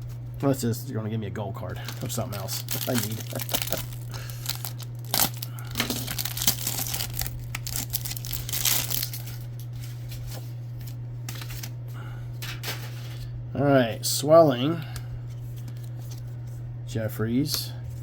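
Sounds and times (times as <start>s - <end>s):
steady low hum: 0.0s - 18.0s
wrapper tearing and crinkling: 1.8s - 9.6s.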